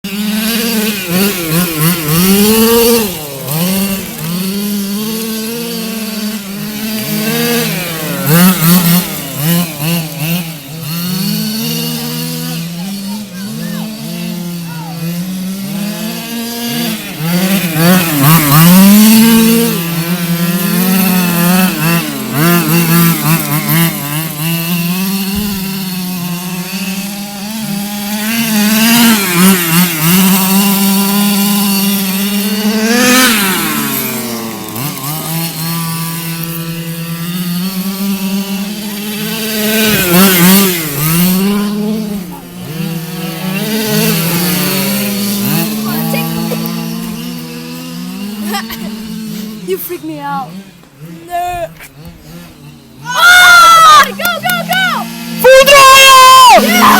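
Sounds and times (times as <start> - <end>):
toy car motor buzzing and revving: 0.0 - 56.9.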